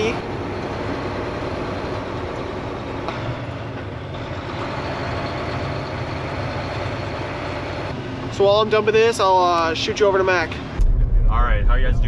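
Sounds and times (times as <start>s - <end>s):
heavy vehicle engine running: 0.0s - 12.0s.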